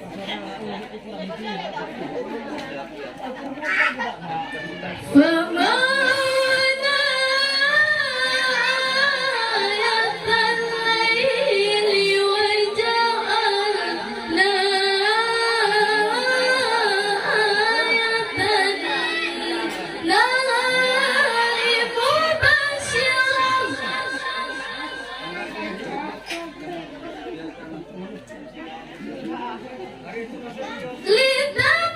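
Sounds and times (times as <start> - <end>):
woman reciting melodically: 5.0 - 25.5, 31.0 - 31.9.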